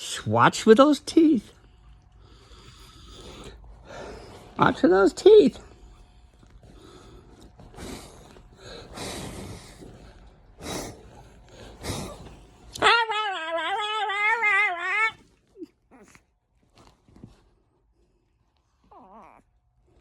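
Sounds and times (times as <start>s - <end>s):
puppy warbling whine: 12.8s - 16.2s, 18.8s - 19.5s.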